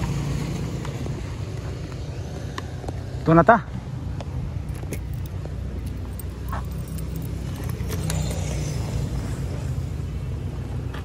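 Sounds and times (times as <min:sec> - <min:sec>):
vehicle engine rumbling: 0:00.0 - 0:11.0.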